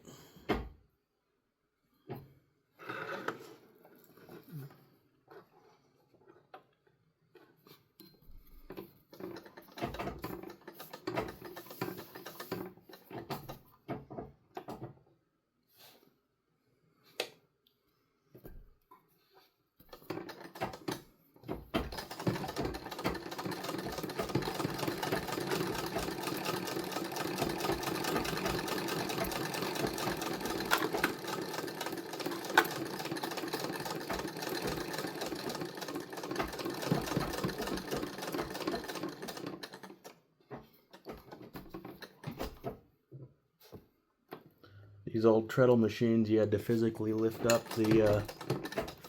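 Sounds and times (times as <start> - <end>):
treadle sewing machine clattering: 8.7 - 14.9, 19.9 - 42.8, 46.9 - 49.0.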